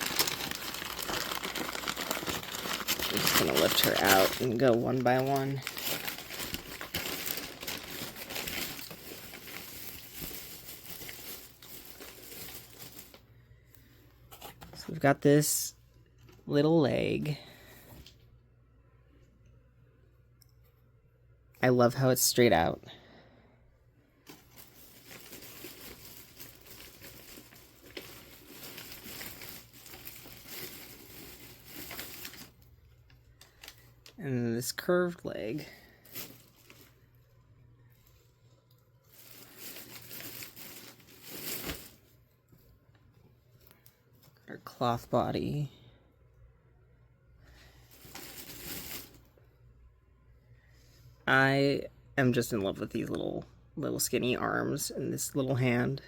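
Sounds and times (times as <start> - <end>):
packaging crinkling and rustling: 0.0 - 13.3, 24.2 - 42.2, 47.6 - 49.4.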